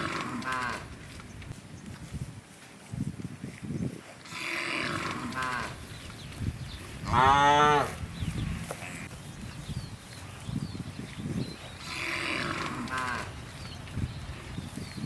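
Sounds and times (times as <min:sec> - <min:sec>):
cows mooing: 0:04.3 - 0:05.8, 0:07.0 - 0:09.1, 0:11.8 - 0:13.5.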